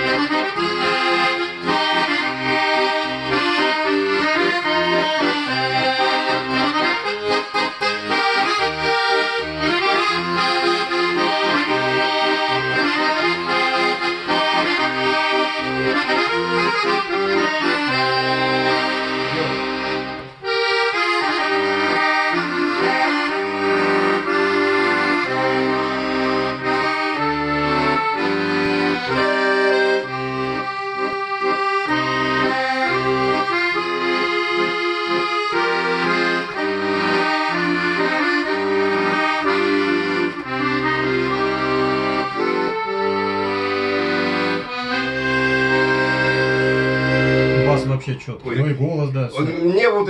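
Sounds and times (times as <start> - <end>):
accordion playing a tune: 0.0 - 50.0.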